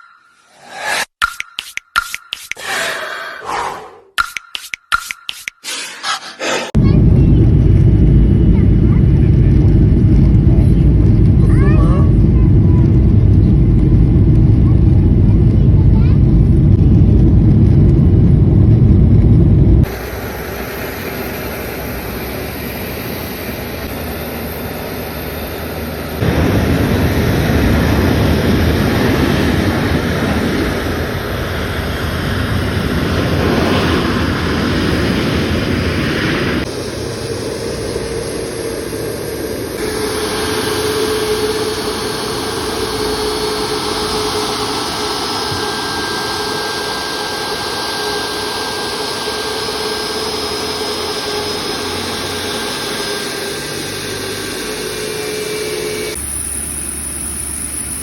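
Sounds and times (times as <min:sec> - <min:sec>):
jet engines roaring: 0:05.6 - 0:58.0
steady whine: 0:12.1 - 0:58.0.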